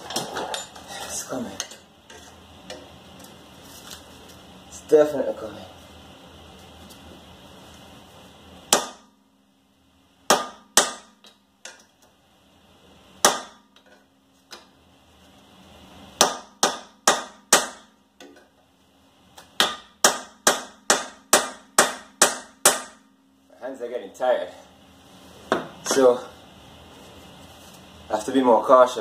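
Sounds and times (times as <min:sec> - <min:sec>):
sledgehammer striking steel: 0:08.7 - 0:09.1.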